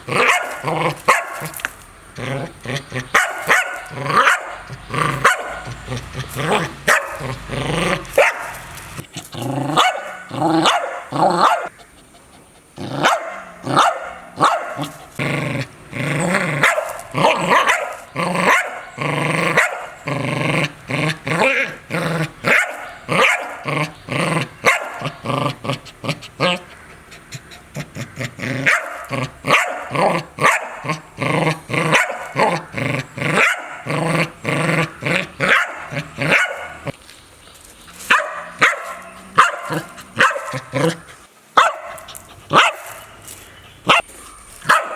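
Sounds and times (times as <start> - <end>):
dog growling: 0.0 - 37.0, 38.5 - 42.7
dog barking: 0.2 - 1.6, 3.0 - 7.4, 8.1 - 8.6, 9.7 - 11.7, 12.9 - 15.0, 16.6 - 18.9, 19.5 - 19.9, 22.4 - 23.6, 24.6 - 25.2, 28.6 - 31.0, 31.9 - 32.6, 33.4 - 33.9, 35.4 - 36.9, 38.1 - 41.0, 41.6 - 43.0, 44.6 - 44.9.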